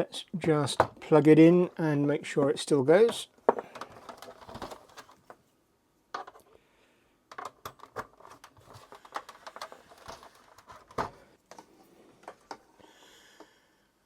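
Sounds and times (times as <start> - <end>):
plastic machine being handled: 3.0 - 5.4, 6.1 - 6.5, 7.3 - 12.7.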